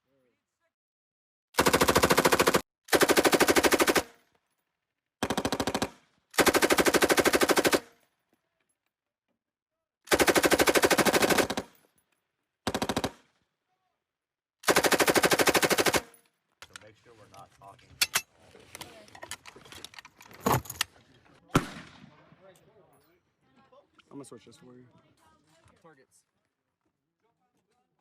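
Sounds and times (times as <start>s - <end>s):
machine gun automatic fire: 1.6s - 4.1s, 5.2s - 7.9s, 10.1s - 11.8s, 12.7s - 13.2s, 14.6s - 16.1s.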